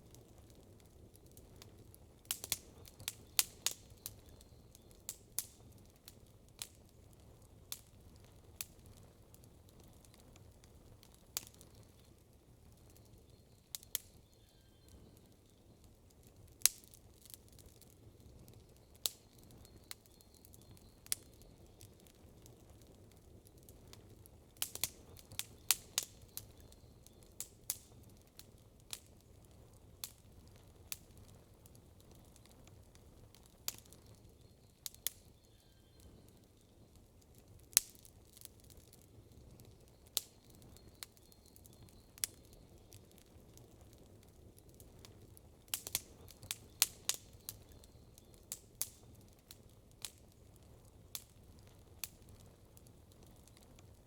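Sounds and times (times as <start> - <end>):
campfire crackling and popping: 0.0 - 54.0.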